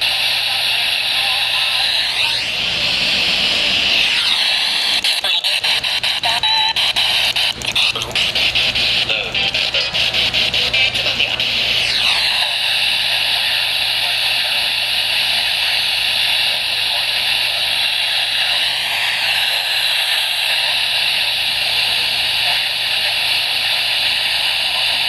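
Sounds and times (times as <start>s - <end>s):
radio static hiss: 0.0s - 25.0s.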